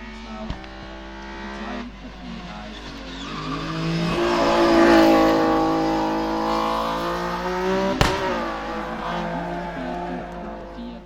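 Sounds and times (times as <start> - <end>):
sharp crack: 0.0 - 10.9
race car engine passing by: 0.0 - 11.0.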